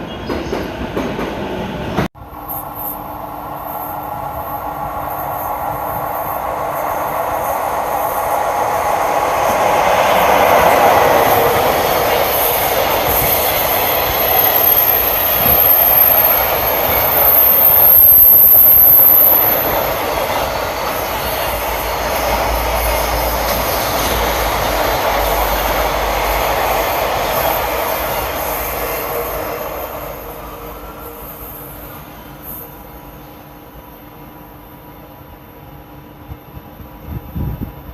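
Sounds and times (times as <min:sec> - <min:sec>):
freight train rolling: 0:00.0 - 0:37.9
high squeal: 0:12.3 - 0:21.8.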